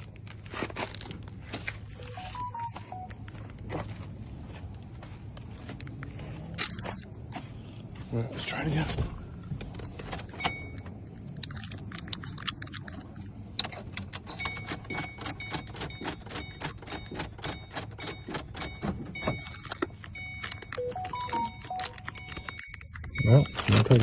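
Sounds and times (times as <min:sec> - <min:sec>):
short electronic beeps: 0:02.0 - 0:03.2, 0:10.4 - 0:10.8, 0:14.3 - 0:24.0
car keys jangling: 0:09.6 - 0:24.0.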